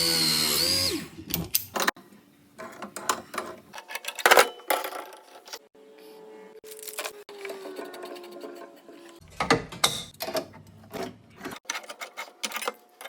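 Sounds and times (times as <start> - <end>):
power drill spinning down: 0.0 - 1.1
tools clicking and knocking: 9.3 - 12.8.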